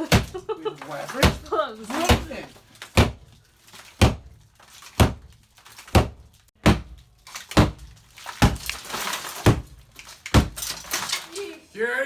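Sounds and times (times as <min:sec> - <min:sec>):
blows striking a stud wall: 0:00.0 - 0:00.5, 0:01.1 - 0:10.9
debris crumbling and falling: 0:00.0 - 0:11.8.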